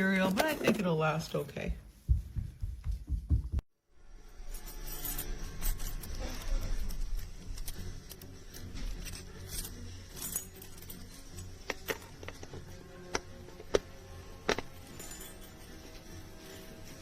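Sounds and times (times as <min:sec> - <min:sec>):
toy keys jangling: 0:04.7 - 0:12.4.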